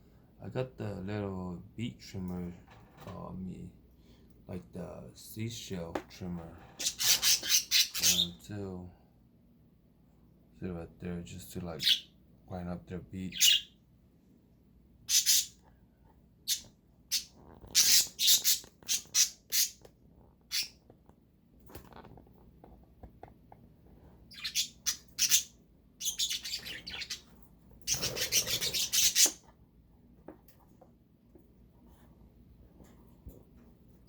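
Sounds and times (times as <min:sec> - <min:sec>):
budgerigars chirping and squawking: 0:06.8 - 0:08.4, 0:11.8 - 0:12.1, 0:13.3 - 0:13.7, 0:15.1 - 0:15.6, 0:16.5 - 0:19.8, 0:20.5 - 0:20.8, 0:24.3 - 0:29.4.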